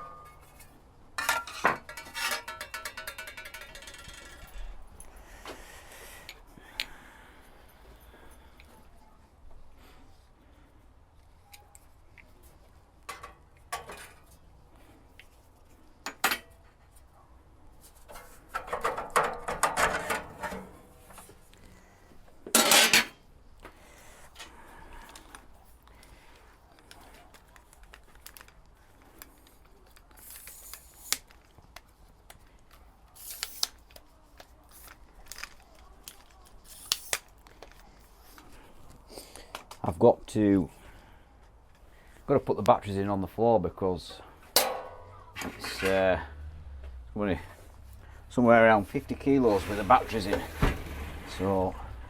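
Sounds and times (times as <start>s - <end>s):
tools and parts clattering: 0.0s - 5.1s, 13.1s - 14.4s, 16.1s - 16.8s, 18.0s - 21.4s, 22.5s - 23.2s, 44.5s - 46.4s.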